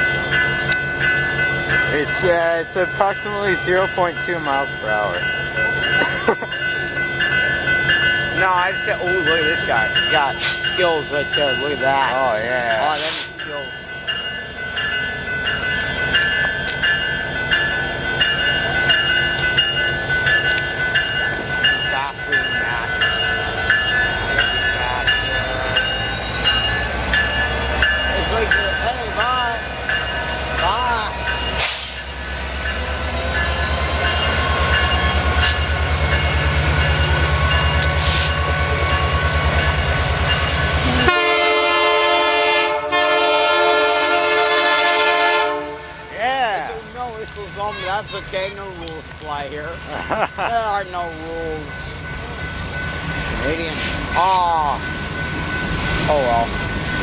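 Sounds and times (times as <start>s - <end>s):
bell ringing: 0.0s - 41.7s, 45.8s - 57.0s
diesel train rumbling: 0.0s - 57.0s
locomotive air horn chord: 40.9s - 46.1s.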